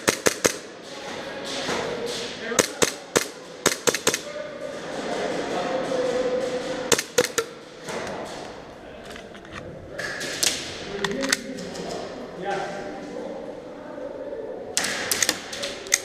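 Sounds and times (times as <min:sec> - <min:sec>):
airsoft guns firing bursts: 0:00.0 - 0:00.7, 0:02.6 - 0:04.2.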